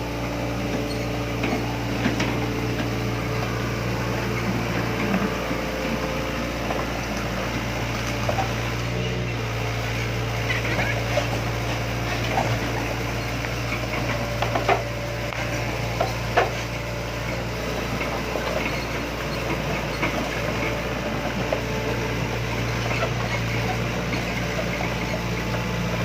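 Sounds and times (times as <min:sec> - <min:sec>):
engine idling: 0:00.0 - 0:26.0.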